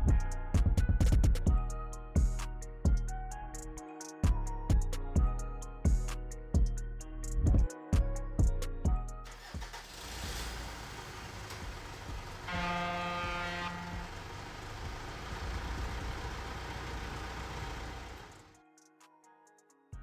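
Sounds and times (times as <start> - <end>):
drum hits in background music: 0.1 - 1.6
traffic noise: 9.5 - 18.5
car horn: 11.1 - 16.7.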